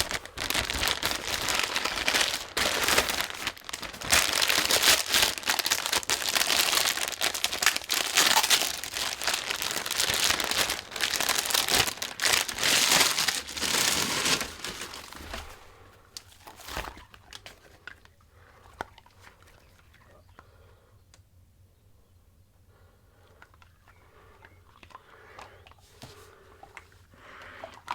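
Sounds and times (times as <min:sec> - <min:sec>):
packaging crinkling and tearing: 0:00.0 - 0:18.1.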